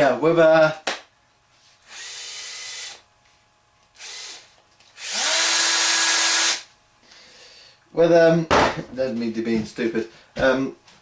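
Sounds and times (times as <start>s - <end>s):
power drill motor whining: 1.9s - 3.0s, 4.0s - 6.7s.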